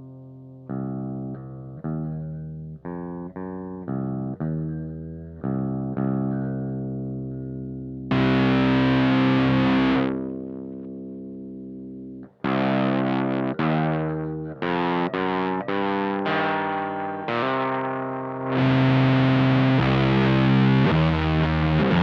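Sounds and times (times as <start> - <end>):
distorted electric guitar riff: 8.1 - 11.2, 12.4 - 22.0.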